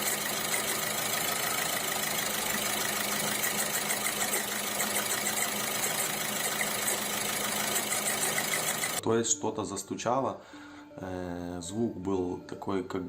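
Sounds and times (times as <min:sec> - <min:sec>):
diesel engine idling: 0:00.0 - 0:09.0.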